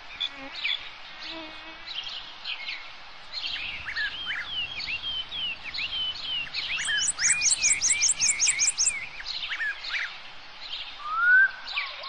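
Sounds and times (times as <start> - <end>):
songbirds chirping and whistling: 0.1 - 12.0
rising bird whistle: 6.7 - 9.0, 11.0 - 11.8
fast high bird trill: 6.8 - 9.0.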